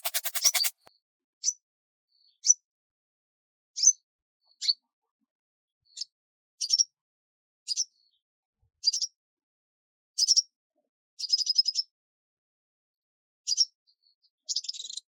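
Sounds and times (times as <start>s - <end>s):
small bird chirping: 0.0s - 0.7s.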